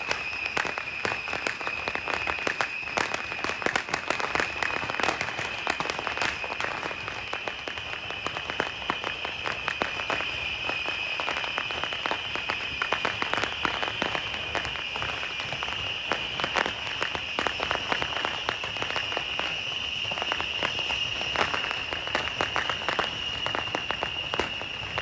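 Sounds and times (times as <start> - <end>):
firecrackers crackling: 0.0 - 25.0.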